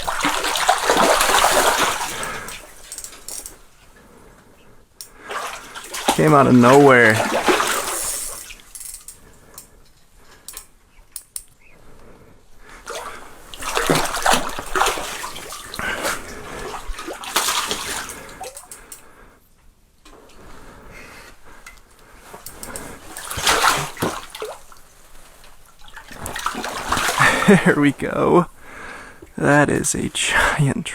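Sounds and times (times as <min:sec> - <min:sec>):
fish splashing in water: 0:00.0 - 0:03.6, 0:05.2 - 0:08.7, 0:12.8 - 0:18.8, 0:23.0 - 0:27.8.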